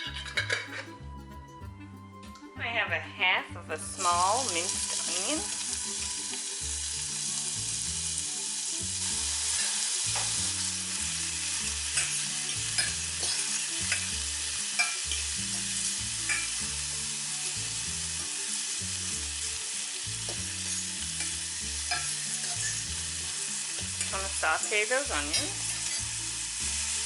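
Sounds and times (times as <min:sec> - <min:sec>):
onion sizzling in oil: 0:03.8 - 0:27.0.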